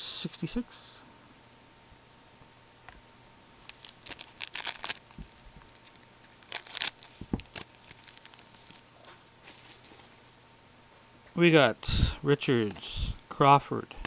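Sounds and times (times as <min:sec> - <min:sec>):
foil wrapper tearing and crinkling: 0:03.6 - 0:08.8.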